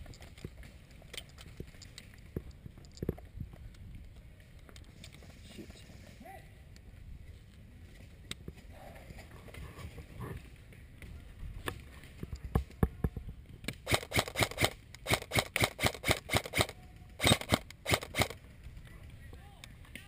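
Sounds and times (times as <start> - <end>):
airsoft gun shots: 13.8 - 18.4.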